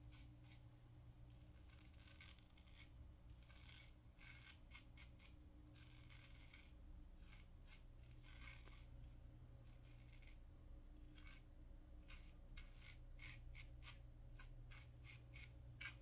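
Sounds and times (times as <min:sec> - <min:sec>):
razor scraping through stubble: 0:01.4 - 0:08.9, 0:09.7 - 0:10.4, 0:12.1 - 0:16.0.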